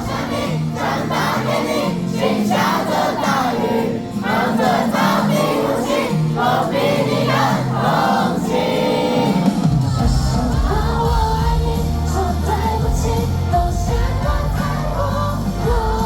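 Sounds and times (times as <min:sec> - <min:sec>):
crowd singing along: 0:00.0 - 0:16.0
pop backing track: 0:04.2 - 0:16.0.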